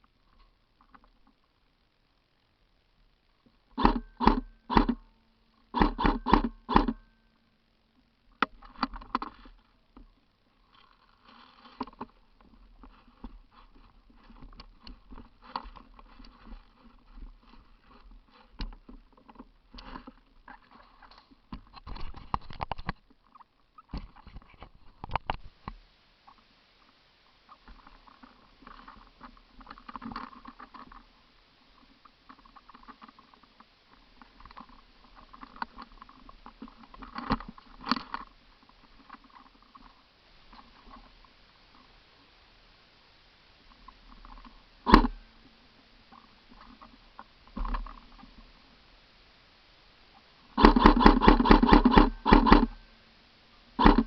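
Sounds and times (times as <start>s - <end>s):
irregular rustling: 8.6s - 25.6s
sharp pops: 50.6s - 52.8s.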